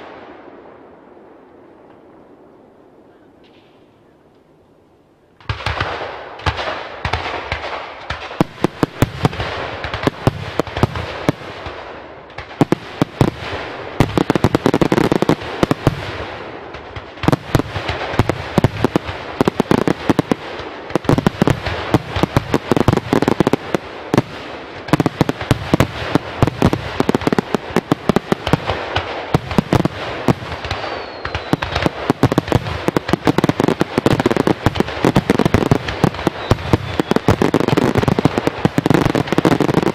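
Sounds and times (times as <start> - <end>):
fireworks bangs and crackling: 0.0 - 2.0, 5.4 - 39.9.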